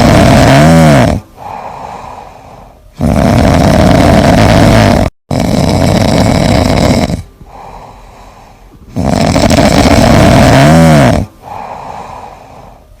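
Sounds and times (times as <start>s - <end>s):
cat snoring: 0.0s - 2.1s, 2.9s - 7.8s, 8.9s - 12.8s
cat breathing: 1.3s - 4.0s, 7.3s - 9.0s, 11.3s - 13.0s.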